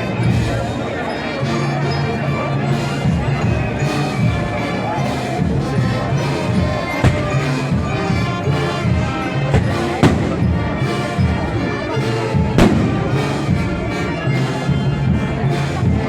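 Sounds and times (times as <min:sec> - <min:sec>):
brass band playing a slow march: 0:00.0 - 0:16.0
sharp bangs: 0:07.0 - 0:08.2, 0:09.5 - 0:11.1, 0:12.6 - 0:13.6.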